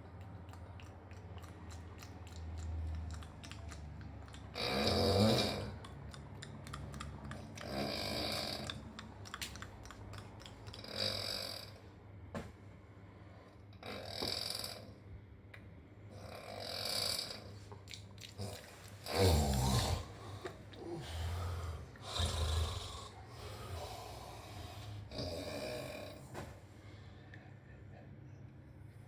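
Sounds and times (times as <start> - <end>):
person snoring: 4.6 - 5.8, 7.4 - 8.9, 10.8 - 11.8, 18.4 - 26.3.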